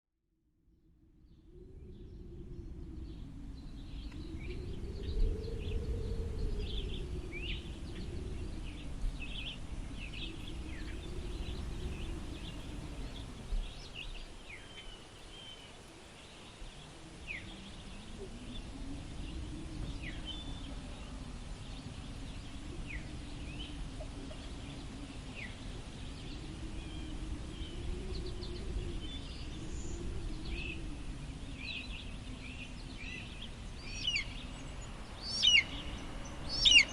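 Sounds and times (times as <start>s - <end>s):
wind howling: 1.0s - 36.9s
bird chirps and calls: 35.2s - 36.9s.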